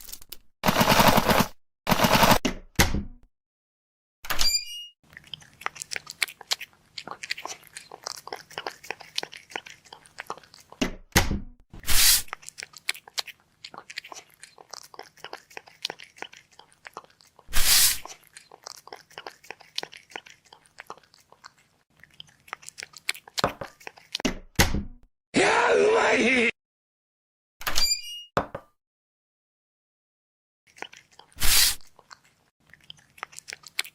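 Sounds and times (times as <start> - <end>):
chewing and crunching food: 5.0 - 11.1, 11.8 - 24.2, 30.7 - 33.9.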